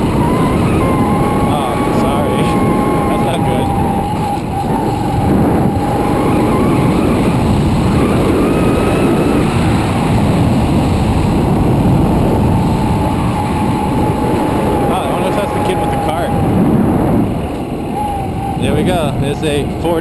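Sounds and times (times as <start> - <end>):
motorbike engine running: 0.0 - 20.0
wind and road noise: 0.0 - 20.0.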